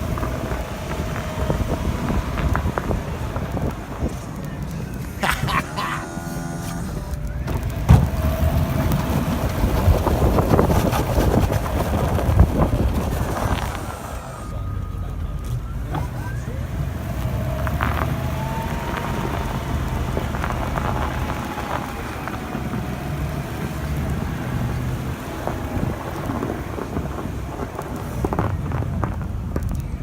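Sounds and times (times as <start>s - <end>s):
engine low rumble: 0.0s - 30.0s
faint whine: 0.0s - 30.0s.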